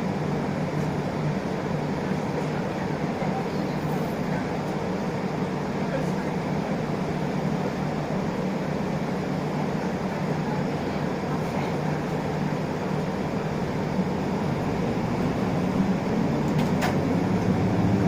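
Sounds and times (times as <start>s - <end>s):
diesel bus engine drone: 0.0s - 18.0s
road noise: 13.1s - 18.0s.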